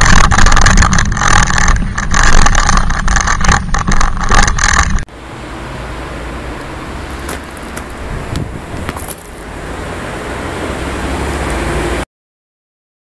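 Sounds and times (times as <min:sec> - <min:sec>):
wind rumble: 0:00.0 - 0:11.3
tyres rolling: 0:06.5 - 0:09.5.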